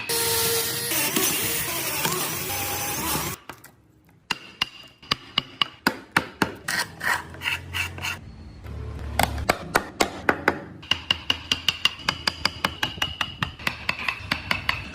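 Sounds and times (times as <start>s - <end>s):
loud grinding rasping noise: 0.1s - 3.4s
hammer tapping carving tools: 9.2s - 14.9s.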